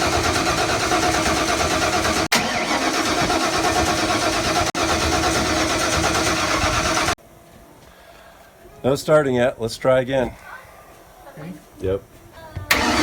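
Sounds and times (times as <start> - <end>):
starter motor cranking engine: 0.0 - 7.2, 12.7 - 13.0.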